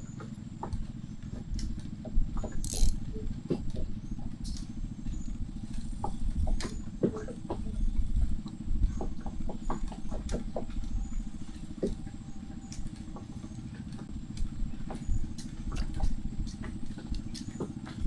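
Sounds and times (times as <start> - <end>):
boat motor running: 0.0 - 18.0
sharp clicks and taps: 2.6 - 3.0.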